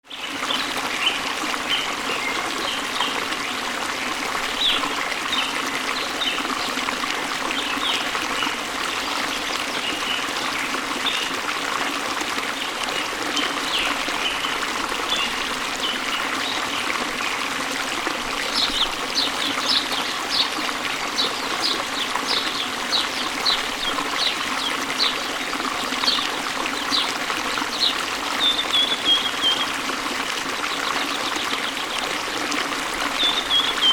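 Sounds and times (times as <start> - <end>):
water trickling: 0.1 - 33.9
small birds chirping: 33.1 - 33.9.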